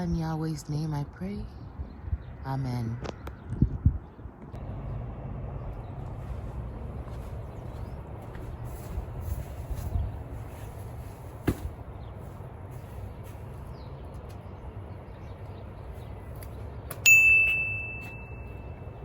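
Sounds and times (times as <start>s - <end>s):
low outdoor rumble: 0.0s - 19.0s
metallic ding: 17.0s - 18.8s.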